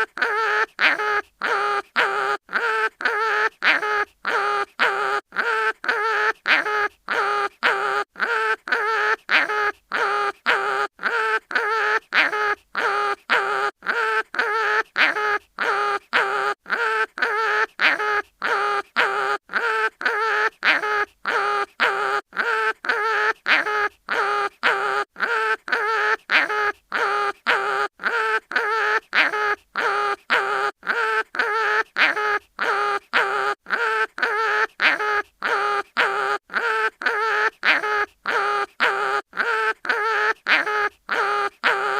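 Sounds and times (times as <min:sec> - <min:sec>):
cartoon animal crying in pain: 0:00.0 - 0:41.9.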